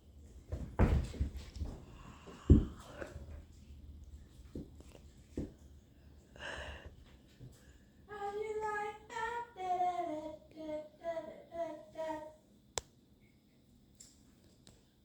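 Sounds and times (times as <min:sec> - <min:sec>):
child singing wordless tune: 0:08.1 - 0:12.4.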